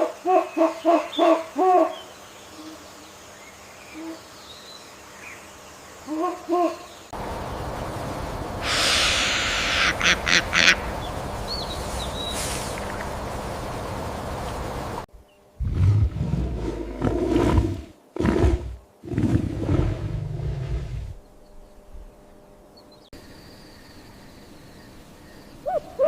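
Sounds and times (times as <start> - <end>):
outdoor hiss: 1.4 - 26.0
owl hooting: 8.6 - 10.9, 25.6 - 26.0.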